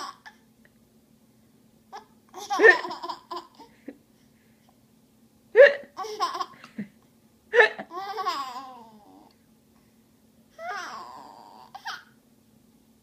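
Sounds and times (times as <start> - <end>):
child giggling: 2.4 - 3.9, 7.6 - 9.0.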